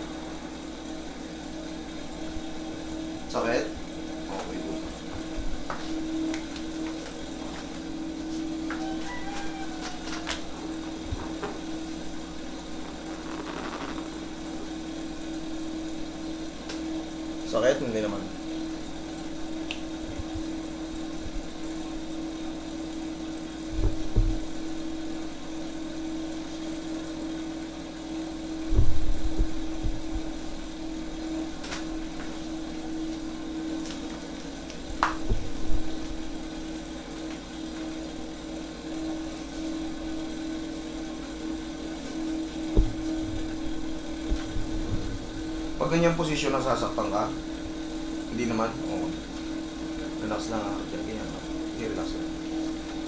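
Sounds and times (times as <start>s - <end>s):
steady mechanical hum: 0.0s - 53.0s
dull low thumps: 42.7s - 45.8s.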